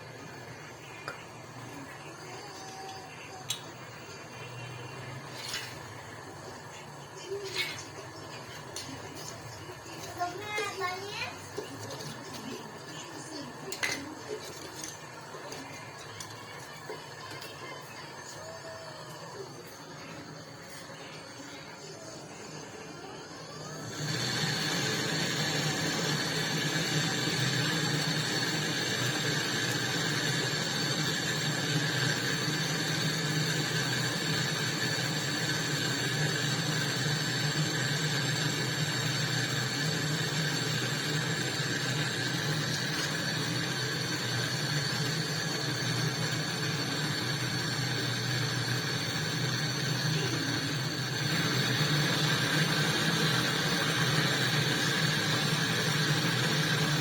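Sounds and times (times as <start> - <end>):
small machine humming and whining: 0.0 - 57.0
hiss: 24.0 - 57.0.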